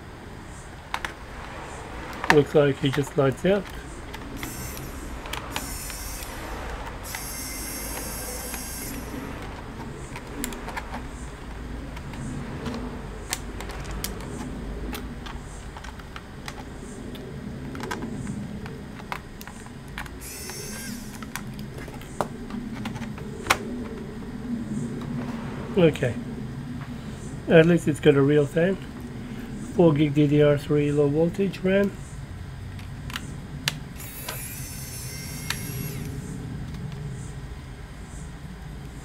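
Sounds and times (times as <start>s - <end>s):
short high whirring: 4.4s - 9.4s, 20.2s - 21.3s, 34.0s - 36.4s.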